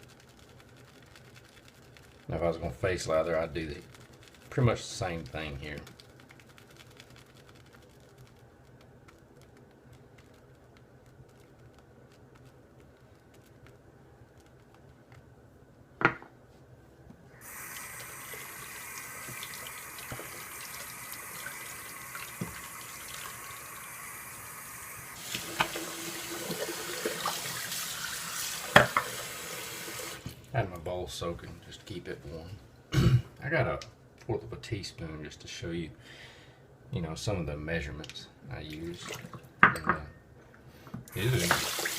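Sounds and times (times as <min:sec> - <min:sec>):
faucet running into a sink: 0:17.4 - 0:30.4, 0:41.1 - 0:41.9.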